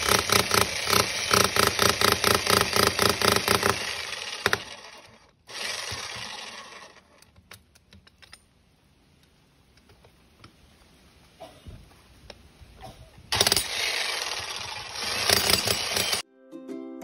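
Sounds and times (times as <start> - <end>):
electric jackhammer hammering: 0.0 - 7.1, 13.3 - 16.2.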